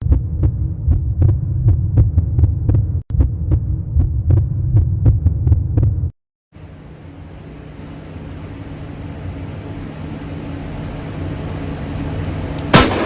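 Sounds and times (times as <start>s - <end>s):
deep even pulse: 0.0s - 6.1s
low hum: 0.0s - 13.0s.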